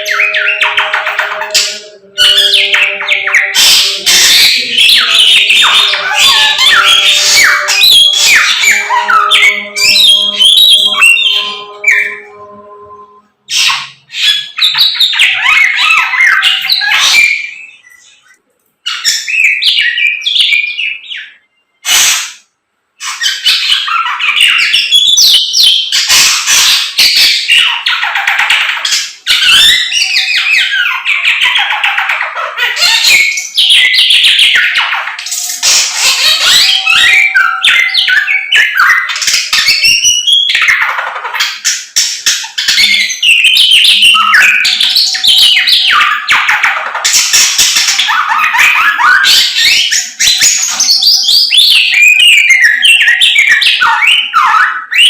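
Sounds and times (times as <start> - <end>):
caged songbird singing: 0.0 - 55.0.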